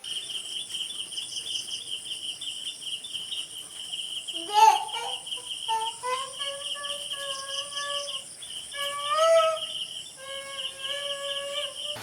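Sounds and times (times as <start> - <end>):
crickets trilling: 0.0 - 12.0
long even pitched calls: 4.3 - 12.0.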